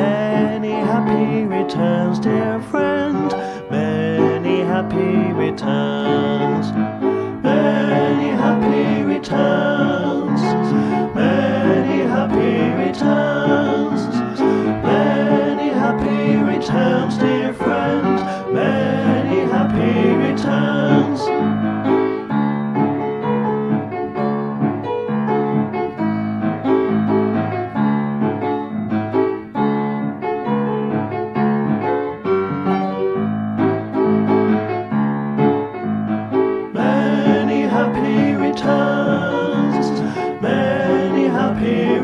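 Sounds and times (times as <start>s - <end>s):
person singing: 0.0s - 21.4s, 36.8s - 42.0s
piano: 0.0s - 42.0s.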